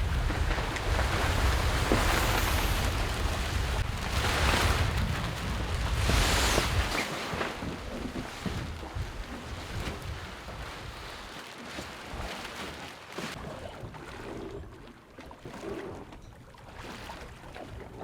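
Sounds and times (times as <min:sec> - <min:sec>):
wind buffeting microphone: 0:00.0 - 0:11.2
sea water rushing past boat: 0:00.0 - 0:18.0.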